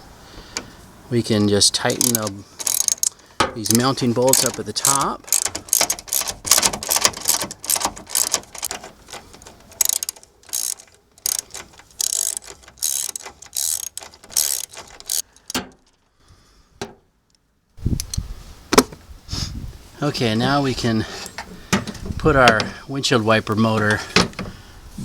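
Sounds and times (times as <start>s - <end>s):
ratchet wrench clicking: 1.9s - 15.7s.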